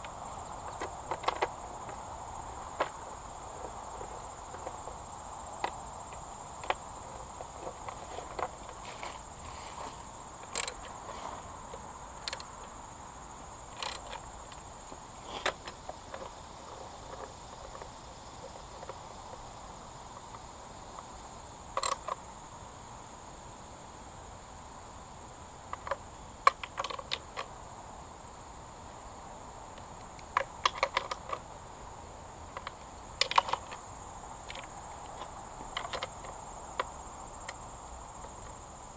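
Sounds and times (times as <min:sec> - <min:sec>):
metallic clicks of hand tools: 0:10.5 - 0:10.9, 0:32.6 - 0:33.8.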